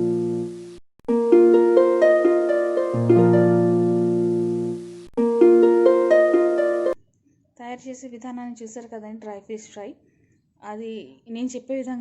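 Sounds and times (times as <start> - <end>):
plucked harp-like melody: 1.1 - 7.0
held bass note: 1.3 - 6.9.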